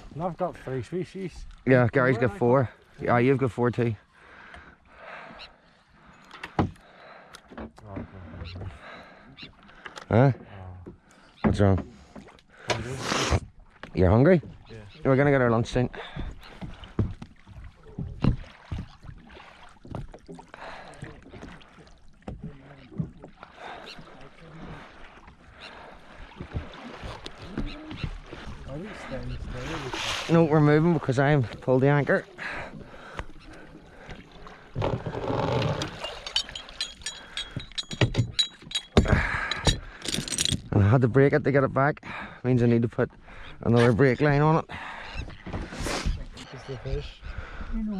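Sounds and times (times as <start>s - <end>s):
water noise: 0.0s - 47.9s
wind: 0.0s - 47.9s
knocks and bumps on boat: 6.4s - 6.9s, 10.8s - 12.9s, 15.7s - 19.2s, 26.2s - 29.6s, 34.7s - 36.8s, 37.5s - 39.9s
metallic clicks and rattles: 35.8s - 40.7s.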